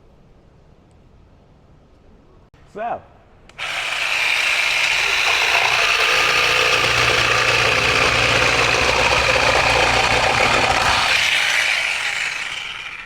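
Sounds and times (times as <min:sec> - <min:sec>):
electric jigsaw sawing wood: 0:03.6 - 0:13.0.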